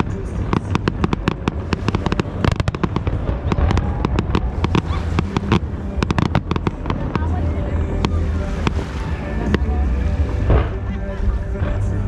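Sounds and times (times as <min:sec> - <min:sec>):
fireworks cracking and banging: 0:00.0 - 0:11.9
steady low rumble: 0:00.0 - 0:12.0.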